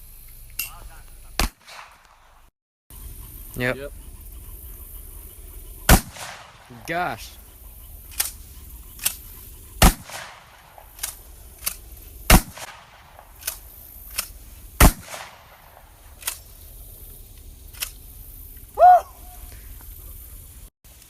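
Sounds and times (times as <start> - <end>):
loud close gunshots: 1.4 - 2.4, 5.9 - 7.0, 9.8 - 11.2, 12.3 - 13.6, 14.8 - 16.0
faint distant gunshots: 1.4 - 2.5, 5.9 - 7.1, 9.8 - 16.2.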